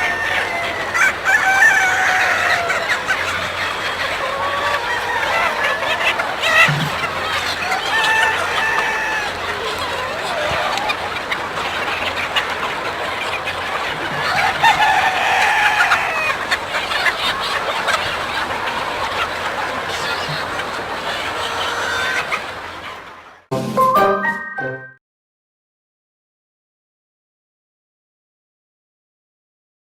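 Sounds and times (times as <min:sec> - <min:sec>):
rooster crowing: 0:00.0 - 0:02.9, 0:06.7 - 0:09.4
chickens clucking and calling: 0:00.0 - 0:24.8.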